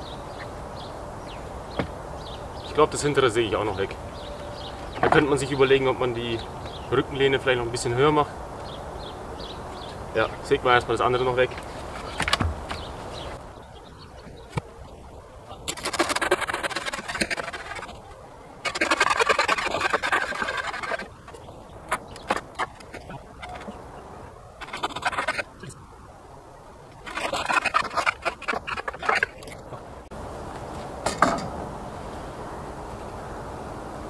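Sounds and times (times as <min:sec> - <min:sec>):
hand saw cutting wood: 0:15.7 - 0:18.0, 0:18.6 - 0:21.1, 0:24.6 - 0:25.5, 0:27.1 - 0:29.4.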